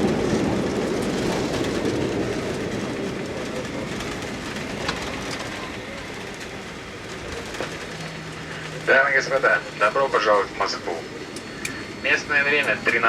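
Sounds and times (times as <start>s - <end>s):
airliner cabin rumble: 0.0s - 13.0s.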